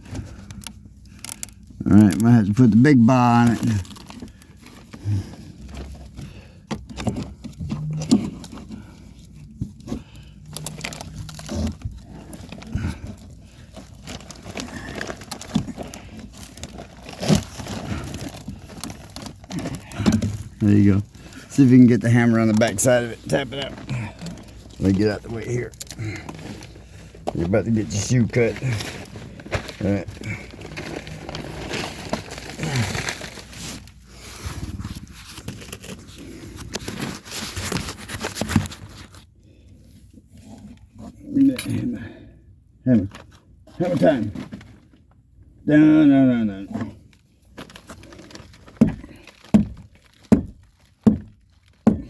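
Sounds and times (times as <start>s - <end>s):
pry bar crunching old wood: 9.8s - 21.5s, 47.5s - 52.0s.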